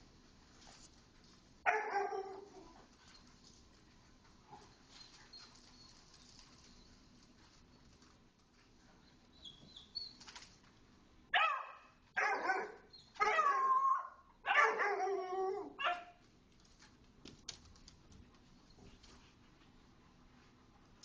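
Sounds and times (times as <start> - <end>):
small dog barking: 1.7 - 2.4, 11.3 - 13.8, 14.4 - 15.1, 15.8 - 16.2.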